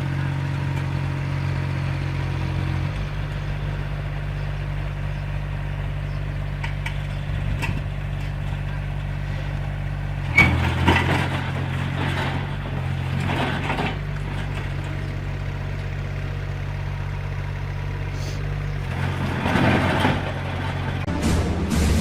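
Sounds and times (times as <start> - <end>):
heavy machine engine running: 0.0 - 22.0
loud noisy clatters: 10.3 - 15.2, 18.9 - 22.0.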